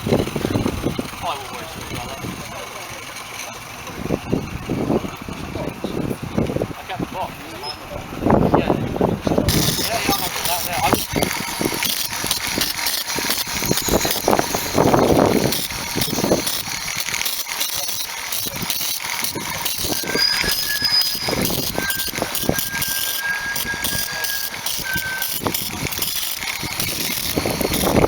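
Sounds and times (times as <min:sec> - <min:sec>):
wind buffeting microphone: 0:00.0 - 0:02.5, 0:03.8 - 0:17.3, 0:18.4 - 0:28.0
model train clicking and rattling: 0:00.0 - 0:07.6, 0:09.1 - 0:28.0
thin high tone: 0:09.3 - 0:28.0.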